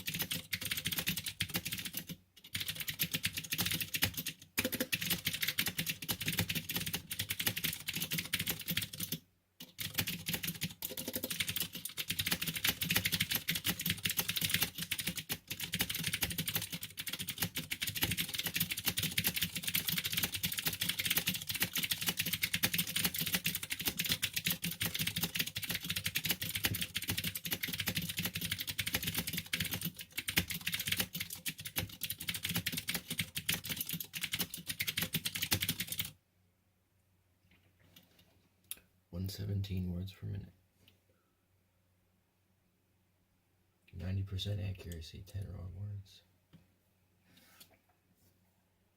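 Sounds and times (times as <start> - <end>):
mechanical keyboard typing: 0.0 - 36.2.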